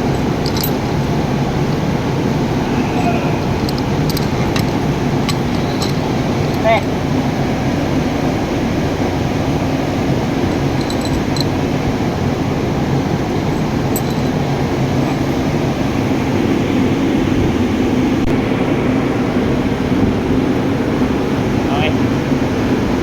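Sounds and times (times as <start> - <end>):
light metallic clinks: 0.0 - 6.9, 10.3 - 12.0, 13.2 - 15.5
machine drone with low hum: 0.0 - 23.0.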